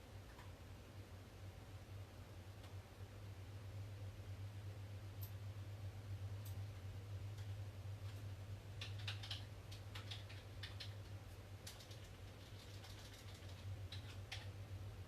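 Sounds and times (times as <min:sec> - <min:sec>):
low electrical hum: 0:00.0 - 0:15.0
keyboard typing: 0:07.4 - 0:14.6.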